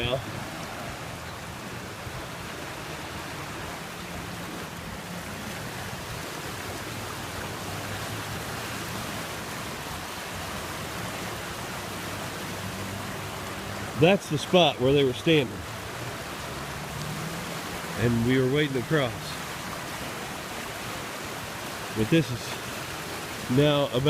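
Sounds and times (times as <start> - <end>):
water rushing in rapids: 0.0 - 24.0.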